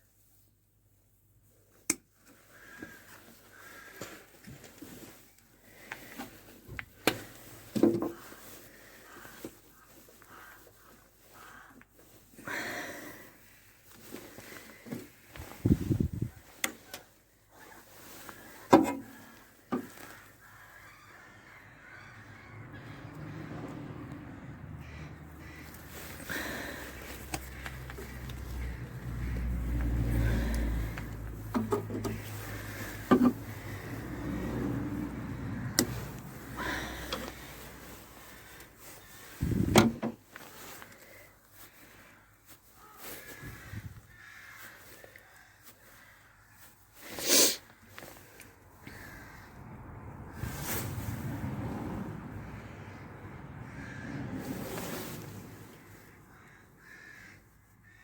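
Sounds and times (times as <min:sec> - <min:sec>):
rustle of handling: 0:13.1 - 0:20.8, 0:25.4 - 0:49.4, 0:50.3 - 0:52.4, 0:54.4 - 0:56.6
low rumble of handling noise: 0:21.2 - 0:40.4.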